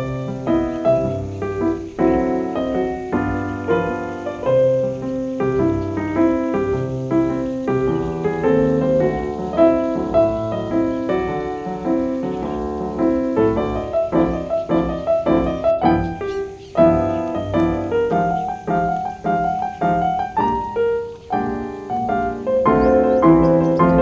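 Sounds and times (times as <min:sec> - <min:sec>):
calm piano music: 0:00.0 - 0:24.0.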